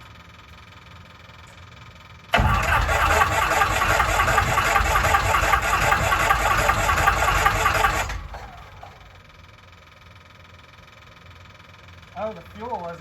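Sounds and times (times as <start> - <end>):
aircraft engine running: 2.4 - 9.2
engine winding down: 2.4 - 9.6.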